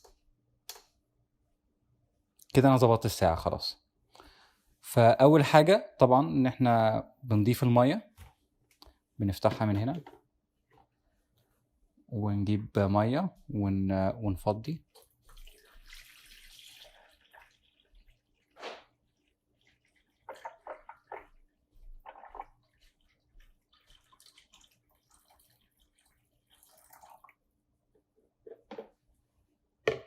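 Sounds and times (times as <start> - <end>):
water pouring into reservoir: 14.8 - 27.6.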